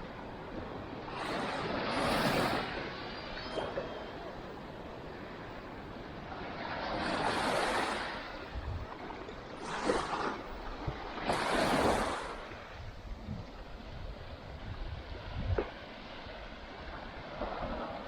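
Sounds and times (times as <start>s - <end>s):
waves washing on beach: 0.0s - 18.0s
sea hiss: 1.2s - 4.2s.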